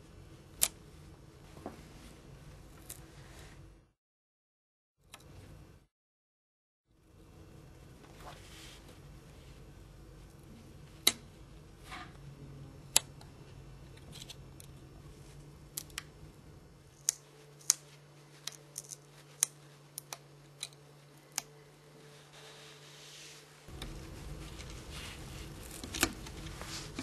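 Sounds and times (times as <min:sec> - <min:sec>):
faint low hum: 0:06.9 - 0:27.0.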